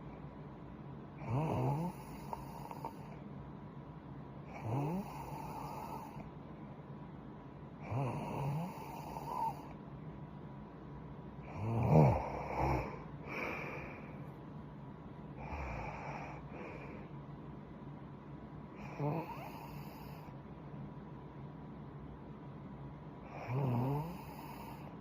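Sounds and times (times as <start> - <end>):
girl snoring: 1.2 - 3.0, 4.5 - 6.2, 7.8 - 9.7, 11.5 - 14.0, 15.4 - 17.0, 18.8 - 20.2, 23.3 - 24.9.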